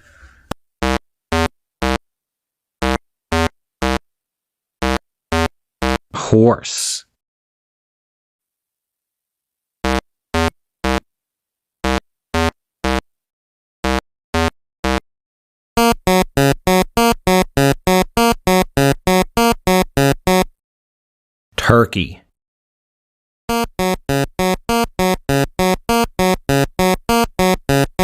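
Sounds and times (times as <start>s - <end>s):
buzzy synthesizer beeps: 2.8s - 4.0s, 4.8s - 6.0s, 15.8s - 20.5s, 23.5s - 28.0s.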